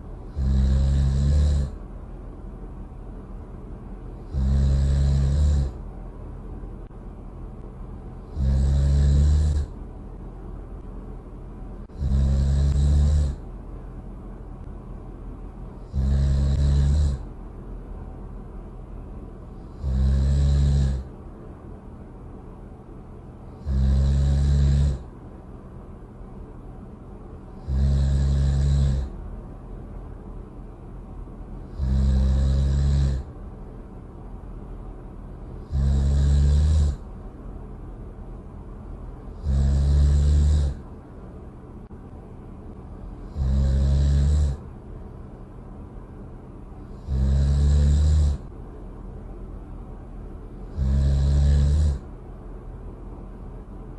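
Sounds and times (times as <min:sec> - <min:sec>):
steady low hum: 0:00.0 - 0:53.9
loud snoring: 0:00.2 - 0:01.8, 0:04.2 - 0:05.8, 0:08.2 - 0:09.8, 0:11.9 - 0:13.4, 0:15.8 - 0:17.3, 0:19.6 - 0:21.1, 0:23.5 - 0:25.1, 0:27.6 - 0:29.2, 0:31.6 - 0:33.3, 0:35.6 - 0:37.1, 0:39.3 - 0:40.9, 0:43.2 - 0:44.6, 0:46.8 - 0:48.5, 0:50.6 - 0:52.1.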